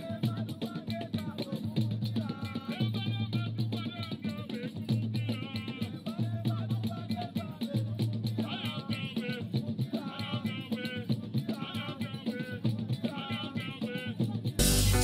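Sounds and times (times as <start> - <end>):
drums and hand percussion: 0.0 - 15.0
person singing: 14.6 - 15.0.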